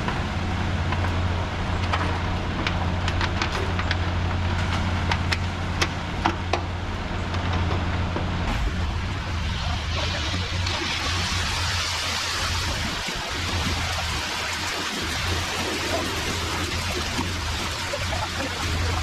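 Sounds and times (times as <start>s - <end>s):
diesel engine humming: 0.0s - 19.0s
wet concrete pouring down chute: 8.5s - 19.0s.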